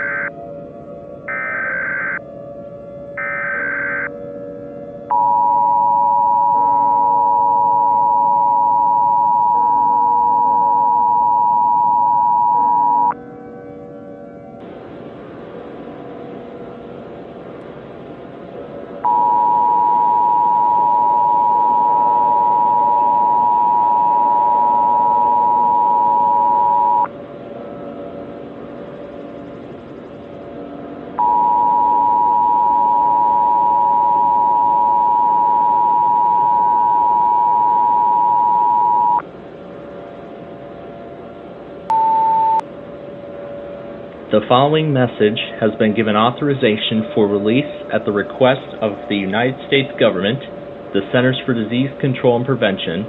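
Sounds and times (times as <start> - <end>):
buzzy data burst: 0.0 - 0.3
two-tone attention signal: 0.0 - 0.4, 1.3 - 2.2, 3.2 - 4.1, 5.1 - 13.2, 19.0 - 27.1, 31.2 - 39.2, 41.9 - 42.6
low hiss with faint hum: 0.0 - 53.0
quiet background music: 0.0 - 53.0.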